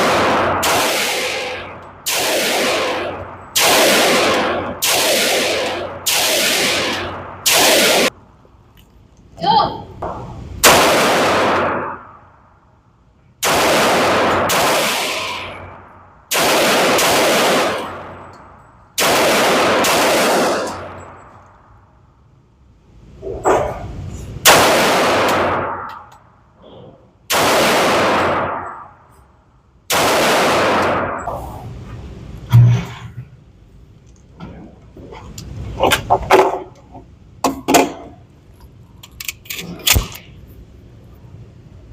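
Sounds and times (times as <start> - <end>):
loud gunshots with echo: 0.0 - 8.1, 10.6 - 12.3, 13.4 - 18.2, 19.0 - 21.2, 24.4 - 26.1, 27.3 - 29.0, 29.9 - 31.3.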